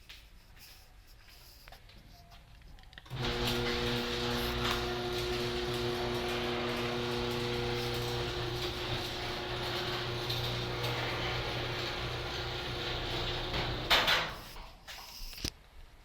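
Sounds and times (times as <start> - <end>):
mechanism whirring and grinding: 3.1 - 14.6.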